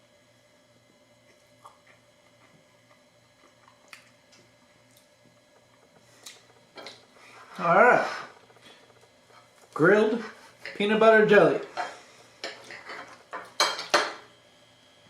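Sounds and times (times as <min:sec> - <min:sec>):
low steady hum: 0:00.0 - 0:15.0
person quietly chewing: 0:01.2 - 0:07.0.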